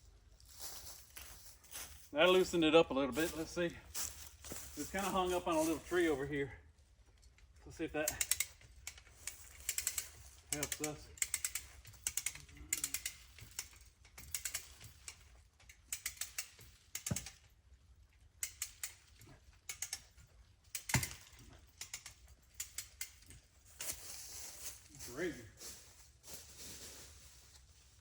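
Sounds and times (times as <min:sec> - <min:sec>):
ratchet pawl clicks: 0:07.3 - 0:17.5, 0:18.2 - 0:24.0.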